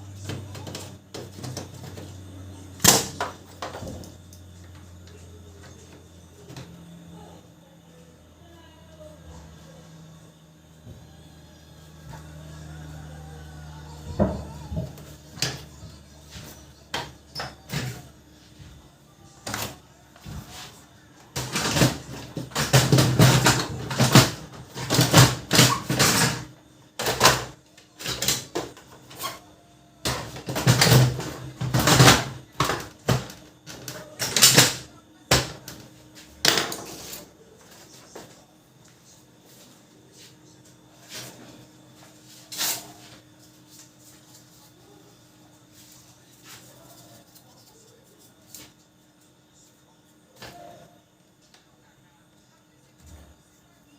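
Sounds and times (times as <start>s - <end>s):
plastic printer parts clattering: 21.3s - 29.2s.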